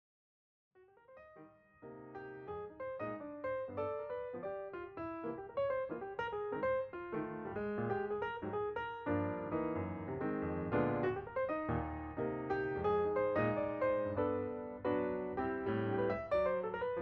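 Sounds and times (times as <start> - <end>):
gentle piano music: 1.0 - 17.0.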